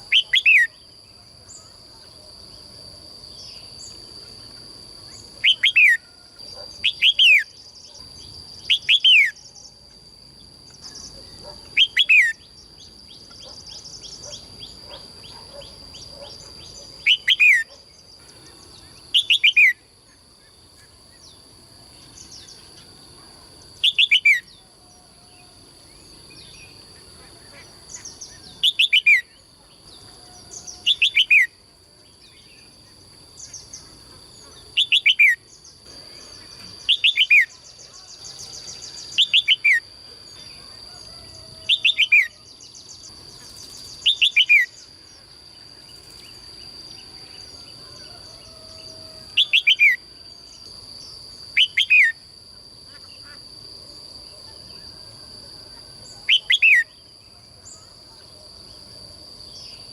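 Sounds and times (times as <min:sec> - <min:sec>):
songbird whistling: 0:05.4 - 0:06.1, 0:11.8 - 0:12.5.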